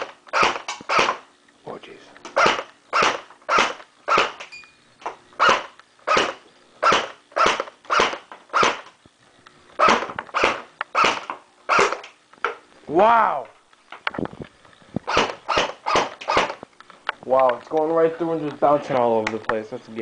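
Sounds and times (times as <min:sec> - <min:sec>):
electric airsoft gun firing: 0:00.0 - 0:01.3, 0:02.3 - 0:04.5, 0:05.4 - 0:08.9, 0:09.8 - 0:12.2, 0:15.0 - 0:16.6.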